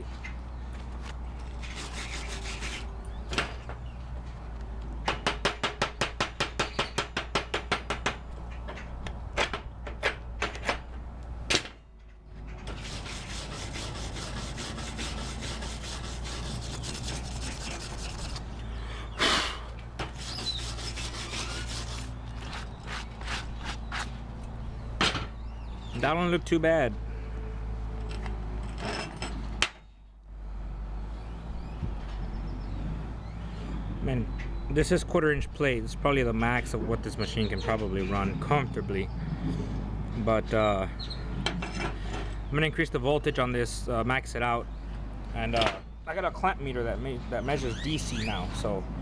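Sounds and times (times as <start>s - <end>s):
wire brush scrubbing steel: 1.6s - 2.9s, 12.7s - 18.6s, 20.0s - 24.1s.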